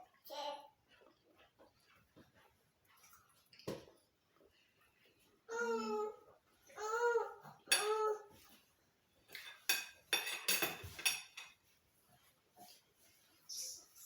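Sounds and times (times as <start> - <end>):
cutlery clinking on plate: 7.7 - 8.0, 9.3 - 11.6.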